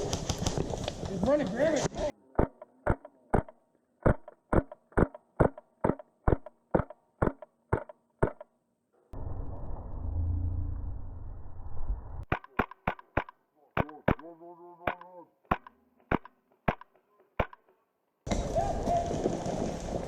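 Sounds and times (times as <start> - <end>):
low rumble: 9.1 - 12.2.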